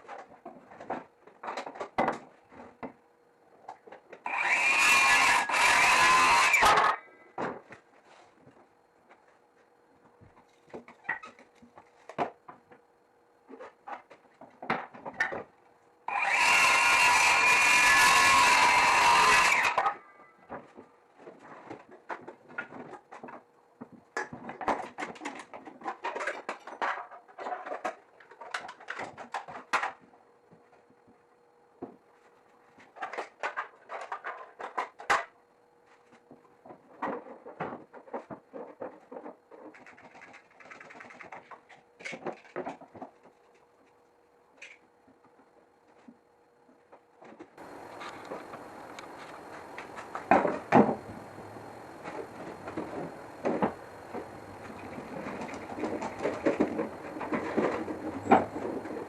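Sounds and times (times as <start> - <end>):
wood pieces and tools clattering: 0.0 - 9.4, 10.2 - 30.2, 31.8 - 35.3, 35.9 - 44.0, 46.8 - 59.0
faint steady hum: 0.0 - 59.0
power tool stopping: 4.3 - 6.9, 16.1 - 19.9.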